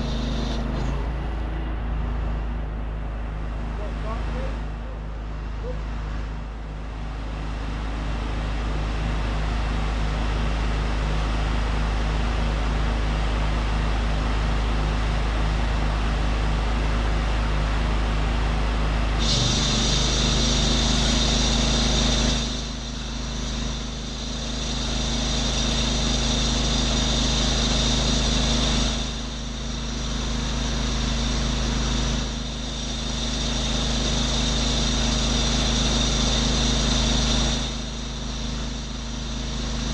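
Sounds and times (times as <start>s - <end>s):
pressure washer engine running: 0.0s - 8.0s, 19.2s - 39.9s.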